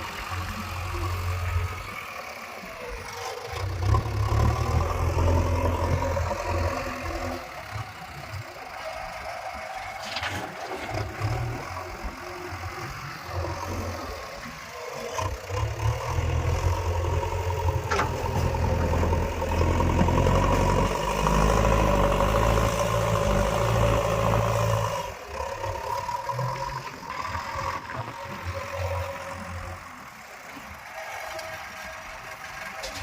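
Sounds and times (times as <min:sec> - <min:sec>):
diesel engine under load: 0:00.0 - 0:33.0.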